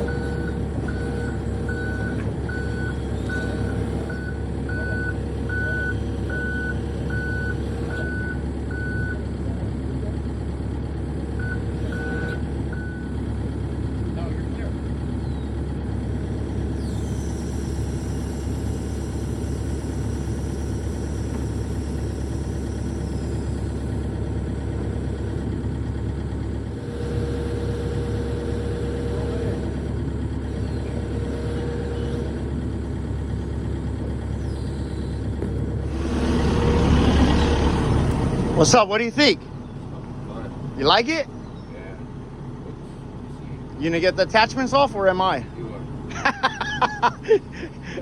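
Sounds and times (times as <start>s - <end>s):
heavy diesel engine running: 0.0s - 48.0s.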